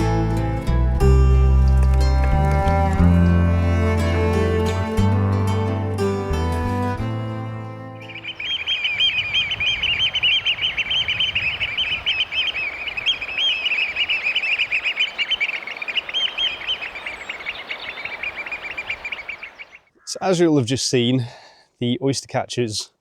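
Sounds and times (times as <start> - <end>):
oystercatchers piping: 1.4 - 3.3, 8.0 - 20.3.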